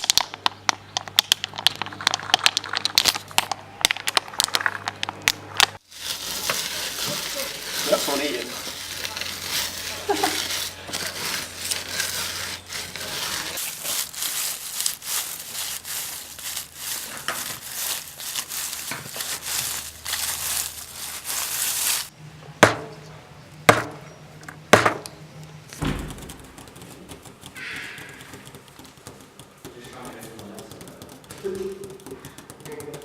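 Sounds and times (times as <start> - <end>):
crinkling crackling rustle: 0.0 - 22.1
sharp knocks: 22.6 - 23.0, 23.7 - 24.0, 24.8 - 25.0.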